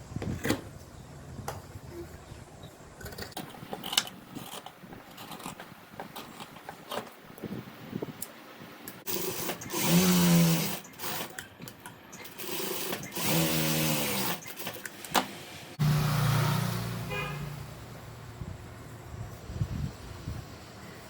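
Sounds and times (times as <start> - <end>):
sewing machine stitching: 9.1 - 11.4, 12.1 - 14.9.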